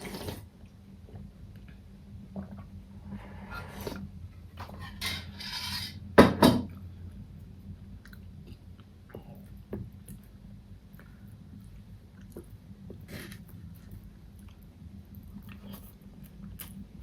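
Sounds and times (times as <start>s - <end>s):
utensils scraping on a plate: 4.8s - 6.0s
soft chewing: 6.7s - 17.0s.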